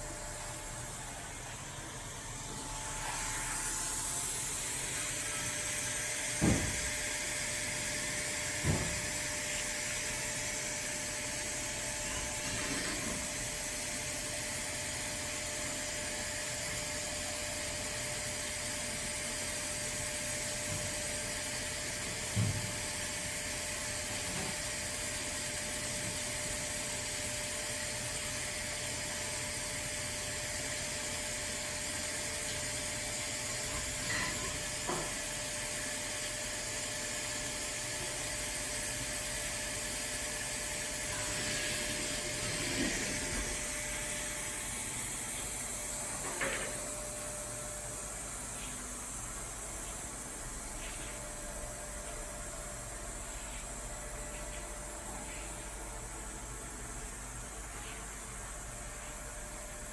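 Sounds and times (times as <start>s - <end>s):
grinder machine hissing: 0.0s - 16.6s, 37.5s - 59.9s.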